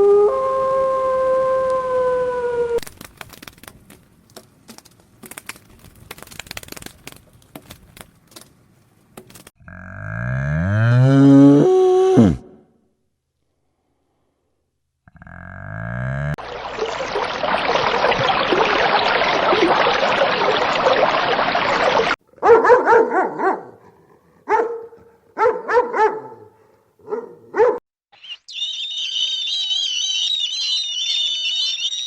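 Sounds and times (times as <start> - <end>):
dog barking: 22.4 - 27.8.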